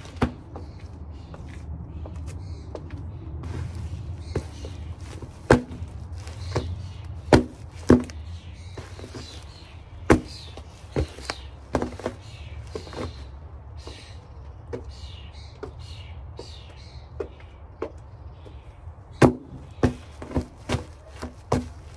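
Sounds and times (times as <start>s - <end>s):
cardboard boxes crushed underfoot: 3.4s - 13.3s, 19.2s - 21.9s
cardboard crackling: 3.4s - 13.3s, 19.2s - 21.9s.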